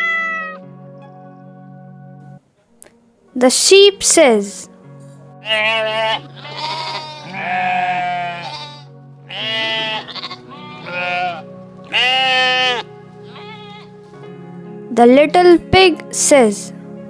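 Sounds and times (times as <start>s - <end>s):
sheep bleating: 0.0s - 0.6s, 5.4s - 14.0s
background music: 0.0s - 17.0s.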